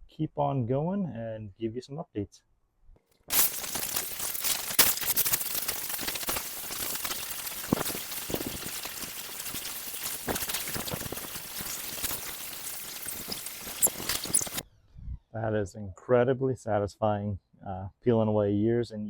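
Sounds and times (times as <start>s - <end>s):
water spattering off concrete: 3.3s - 14.6s.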